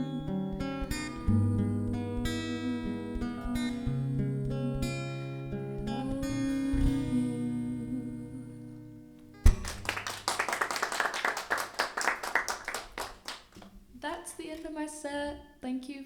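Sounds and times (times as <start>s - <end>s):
strummed guitar chords: 0.0s - 9.8s
people clapping: 9.5s - 13.8s.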